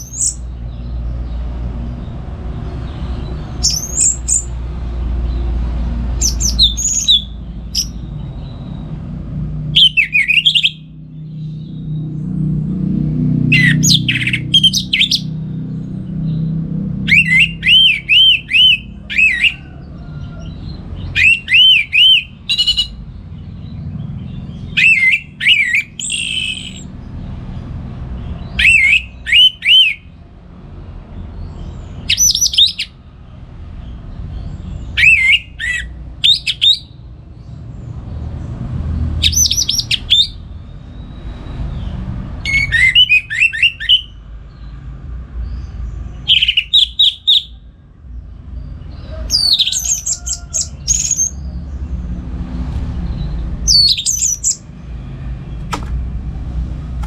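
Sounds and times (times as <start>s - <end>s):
thrush singing whistled phrases: 3.6s - 4.6s, 6.2s - 8.0s, 9.8s - 10.9s, 13.5s - 15.3s, 17.0s - 19.6s, 21.1s - 23.0s, 24.7s - 26.9s, 28.5s - 30.1s, 32.0s - 33.0s, 34.9s - 37.0s, 39.2s - 40.4s, 42.4s - 44.2s, 46.2s - 47.6s, 53.7s - 54.6s.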